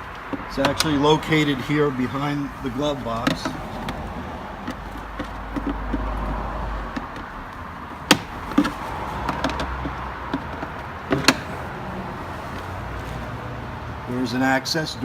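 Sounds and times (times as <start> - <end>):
low background noise: 0.0 - 15.0
glove box plastic clicks: 0.1 - 1.0, 3.0 - 11.6.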